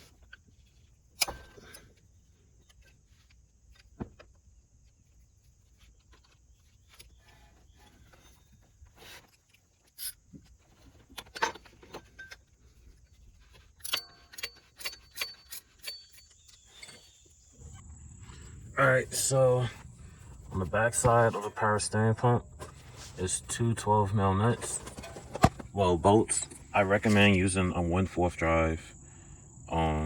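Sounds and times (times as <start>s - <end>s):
metal clinks: 13.5s - 17.2s
ratchet clicks: 13.8s - 17.0s.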